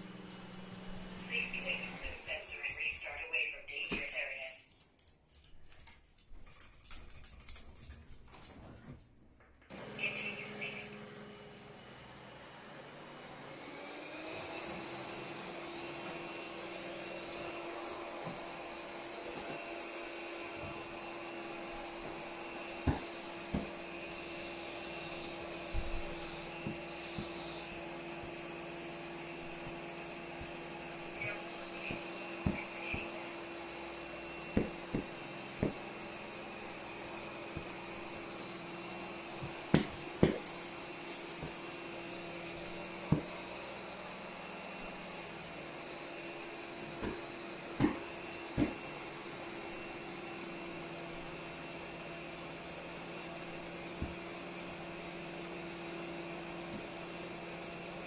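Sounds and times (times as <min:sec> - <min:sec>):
vacuum cleaner motor running: 0:00.0 - 0:02.3, 0:09.7 - 0:58.0
knocks and clicks on floor: 0:22.7 - 0:24.0, 0:25.1 - 0:28.4, 0:34.5 - 0:36.1, 0:39.4 - 0:41.7, 0:46.9 - 0:48.9.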